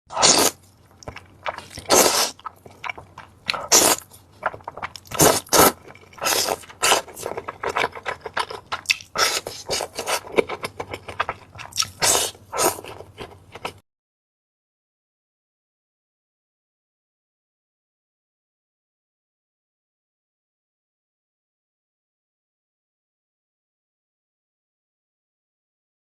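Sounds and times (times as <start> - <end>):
noodles slurped: 0.1 - 13.7
wet chewing: 0.1 - 13.8.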